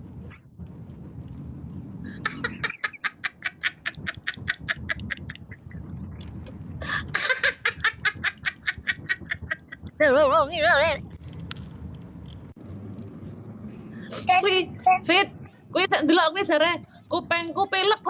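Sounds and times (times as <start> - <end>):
person laughing hard: 2.1 - 5.7, 6.8 - 10.0.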